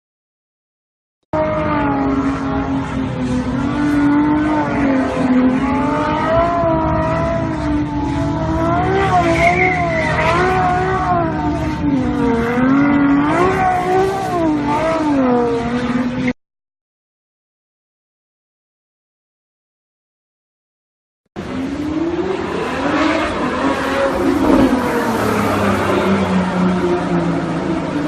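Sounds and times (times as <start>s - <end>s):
car engine revving: 1.4s - 16.4s, 21.4s - 28.0s
tyre squeal: 9.1s - 11.0s.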